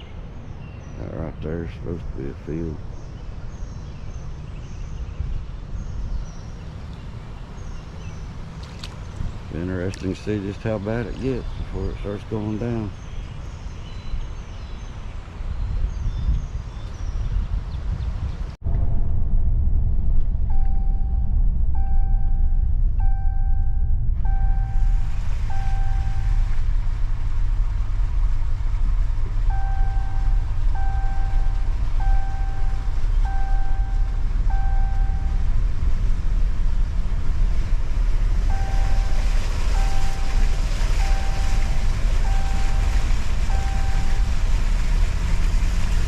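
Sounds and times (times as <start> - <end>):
road and engine rumble: 0.0 - 46.0
car warning chime beeping: 20.5 - 26.6, 29.5 - 35.6, 38.5 - 44.3.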